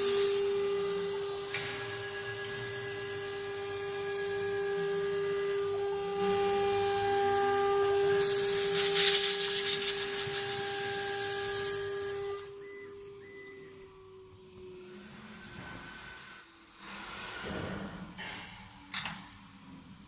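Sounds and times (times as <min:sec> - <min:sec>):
spindle whining: 0:00.0 - 0:20.0
loud hiss: 0:08.2 - 0:11.8.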